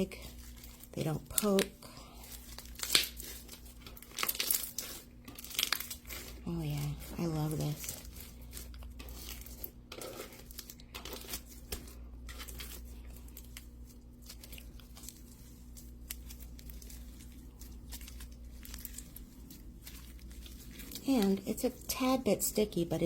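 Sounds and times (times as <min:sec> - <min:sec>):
slime crackling and clicking: 0:02.7 - 0:06.3.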